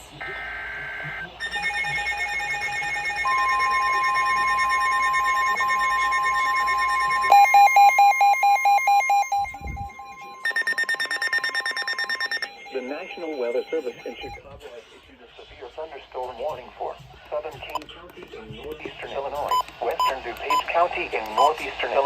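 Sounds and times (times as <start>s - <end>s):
weather radio warning tone: 0.0s - 7.8s, 8.8s - 14.4s
pulsed beeping alarms: 0.0s - 14.4s.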